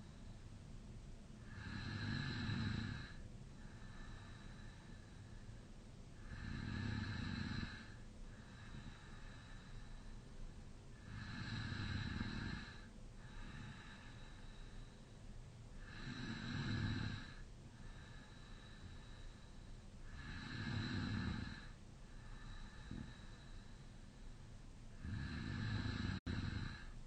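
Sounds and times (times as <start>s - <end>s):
quiet breaths: 0.0s - 27.0s
man snoring: 1.5s - 4.3s, 6.2s - 9.6s, 11.0s - 14.2s, 15.8s - 19.2s, 20.1s - 23.4s, 25.0s - 26.9s.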